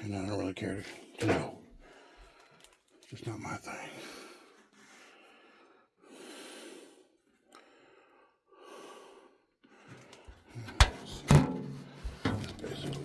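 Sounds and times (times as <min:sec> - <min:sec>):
person breathing softly: 0:01.7 - 0:02.8, 0:03.9 - 0:10.5
light handling knocks: 0:10.7 - 0:13.0.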